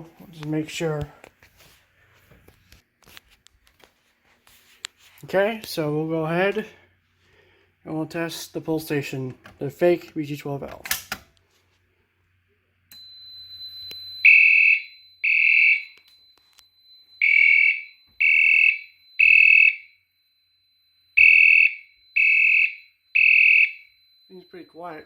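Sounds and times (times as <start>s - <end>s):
fire alarm horn blasts: 14.2s - 25.0s
steady high-pitched tone: 18.8s - 25.0s.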